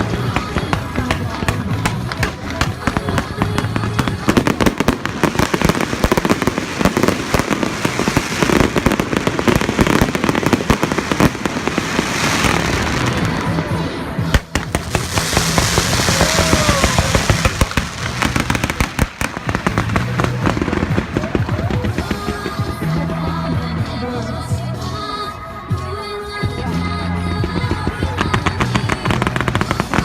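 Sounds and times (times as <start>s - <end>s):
fireworks crackling and popping: 0.0s - 24.1s, 27.3s - 30.0s
background music: 0.0s - 30.0s.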